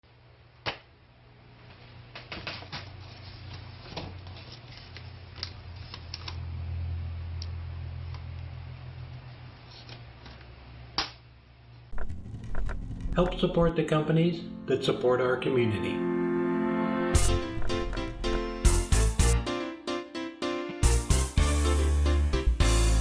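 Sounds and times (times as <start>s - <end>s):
low hum: 11.9s - 18.9s.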